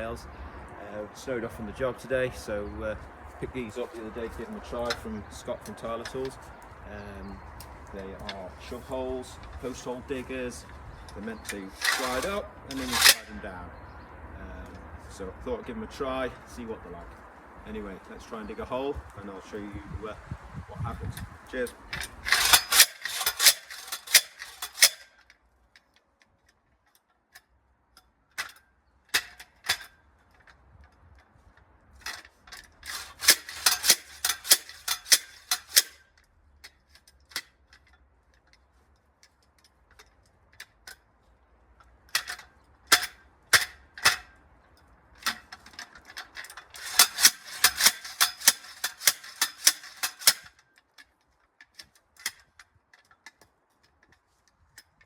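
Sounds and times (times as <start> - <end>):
post hole digger clicking: 3.6 - 13.6, 21.2 - 27.5, 28.4 - 31.4, 32.0 - 41.0, 41.8 - 55.0.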